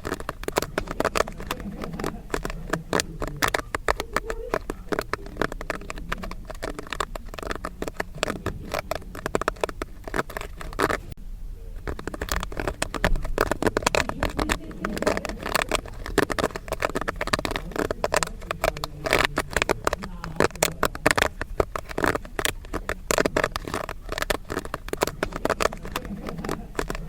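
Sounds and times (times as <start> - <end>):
popcorn popping: 0.0 - 27.0.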